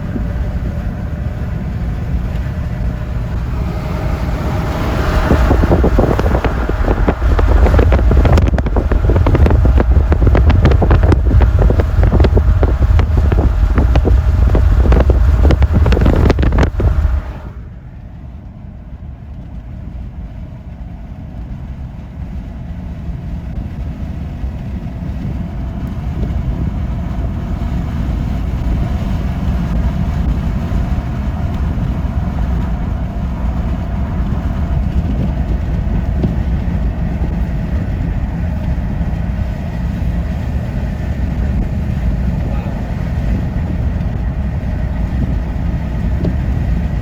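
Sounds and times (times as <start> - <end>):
vehicle engine and road rumble: 0.0 - 47.0.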